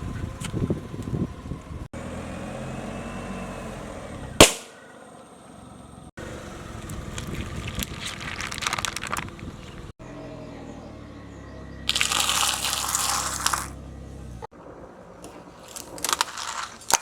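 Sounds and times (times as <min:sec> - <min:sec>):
car tyre rumbling: 0:00.0 - 0:17.0
loud sharp pop: 0:04.4 - 0:04.8
crackling crunches: 0:06.7 - 0:10.0, 0:11.9 - 0:13.8, 0:15.2 - 0:17.0.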